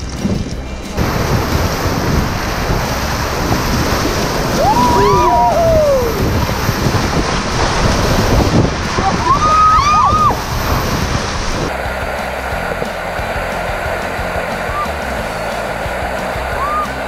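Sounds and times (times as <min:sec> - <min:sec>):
wind buffeting microphone: 0:00.0 - 0:17.0
river water rushing: 0:00.6 - 0:17.0
people whooping and yelling: 0:04.5 - 0:06.4, 0:09.0 - 0:10.4, 0:16.5 - 0:17.0.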